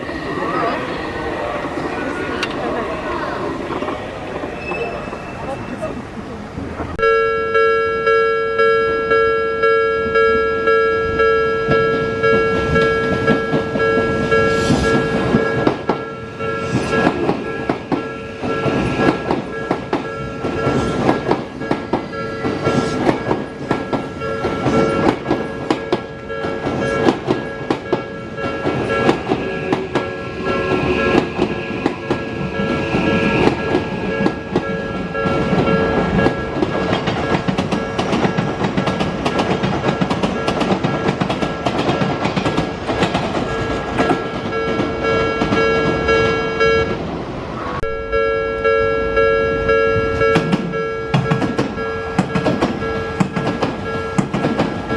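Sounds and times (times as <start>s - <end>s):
level-crossing warning bell ringing: 6.9s - 47.0s, 47.8s - 54.9s
train wheels clacking over rail joints: 11.7s - 46.4s, 50.3s - 54.9s.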